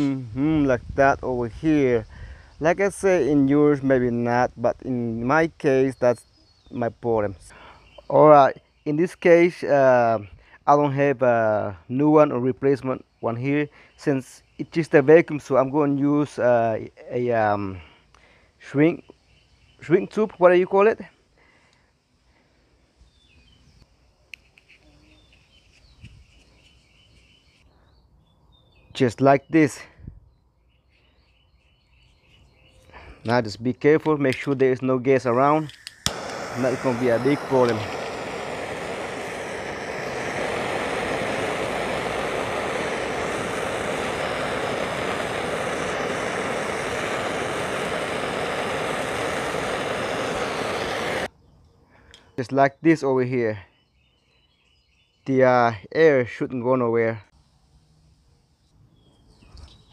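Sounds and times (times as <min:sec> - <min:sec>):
birds chirping: 0:00.0 - 0:21.9, 0:22.7 - 0:57.6, 0:58.3 - 0:59.9
heat gun blowing: 0:35.2 - 0:51.3.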